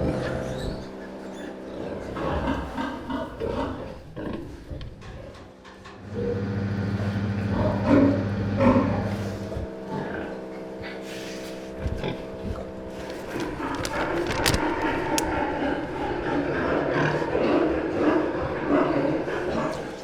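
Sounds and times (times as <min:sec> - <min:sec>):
pigs grunting and squealing: 0:00.0 - 0:05.6, 0:15.3 - 0:20.0
mechanical hum: 0:00.0 - 0:20.0.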